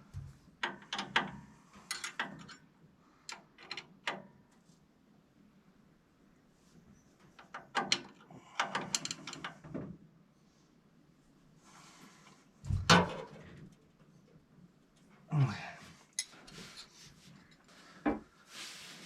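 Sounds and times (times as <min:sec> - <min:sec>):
clicks and knocks of tools: 0:00.2 - 0:04.3, 0:07.2 - 0:09.8.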